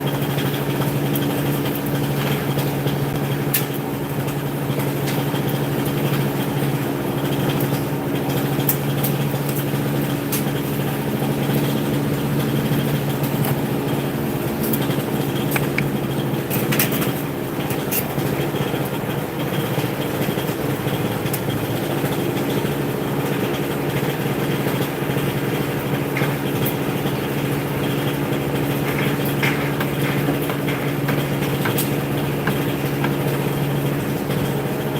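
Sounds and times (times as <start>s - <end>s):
motor running steadily: 0.0s - 34.9s
light clicks and knocks: 14.6s - 17.1s, 28.7s - 34.0s.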